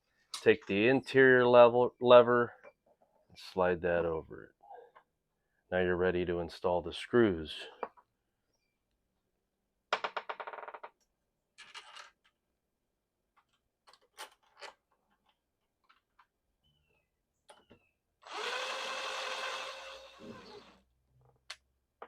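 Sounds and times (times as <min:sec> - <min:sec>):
power drill driving screws: 0:18.2 - 0:20.8.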